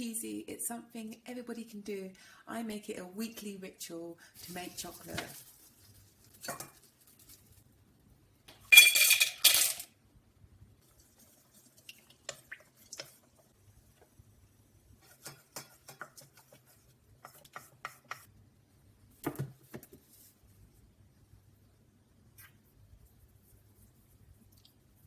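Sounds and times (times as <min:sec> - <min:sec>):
utensils and containers clicking: 0:08.7 - 0:09.9.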